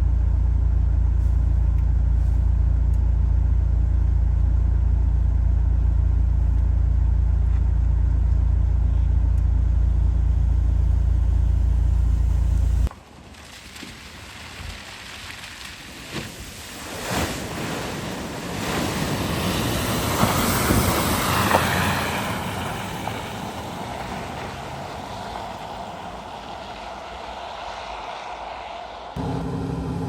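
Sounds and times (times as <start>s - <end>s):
floodwater splashing and rushing: 12.9s - 29.2s.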